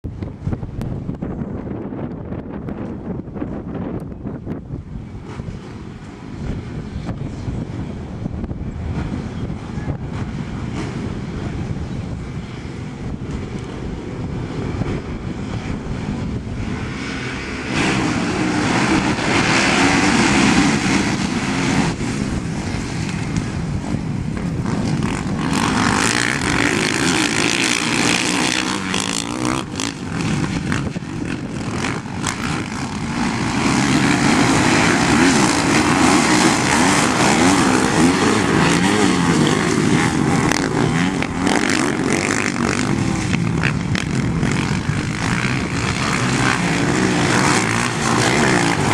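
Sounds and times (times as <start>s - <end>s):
dirt bike engine revving: 12.4s - 48.9s.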